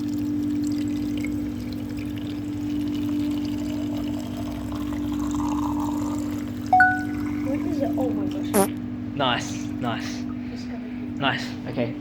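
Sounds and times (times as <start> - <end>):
drinking fountain humming: 0.0 - 8.6
water pouring into a bottle: 0.2 - 7.4.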